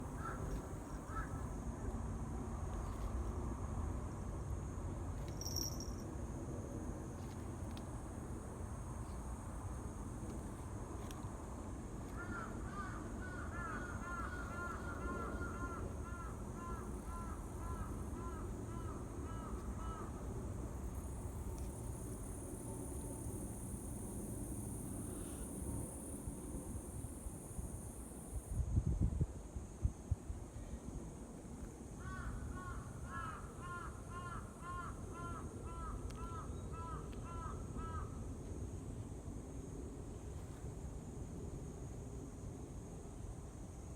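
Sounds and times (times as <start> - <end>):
insects chirring: 0.0 - 1.6, 4.0 - 28.6, 31.9 - 40.3
crow cawing: 0.2 - 0.5, 1.1 - 1.4, 12.2 - 20.1, 32.0 - 38.2.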